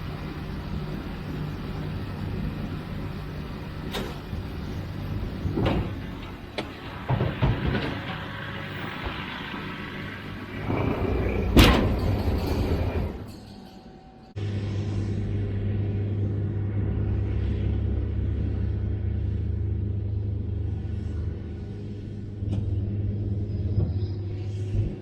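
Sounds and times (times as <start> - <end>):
tractor engine running: 0.0 - 13.6
machinery clunks and knocks: 0.8 - 13.4.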